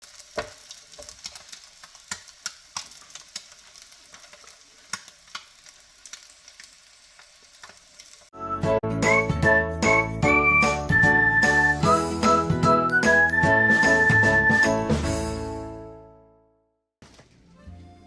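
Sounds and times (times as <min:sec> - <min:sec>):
food sizzling on a griddle: 0:00.0 - 0:08.3.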